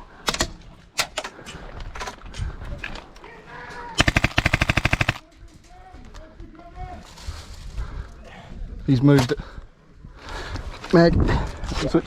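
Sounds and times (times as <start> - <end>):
airsoft rifle full-auto burst: 4.0 - 5.2.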